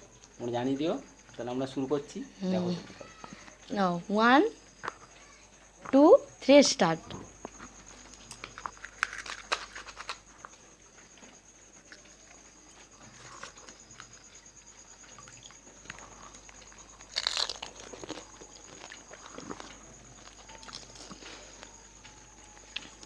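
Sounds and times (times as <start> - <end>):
chewing: 7.4 - 23.0
crisp shells crunching: 8.3 - 10.5, 17.0 - 21.7.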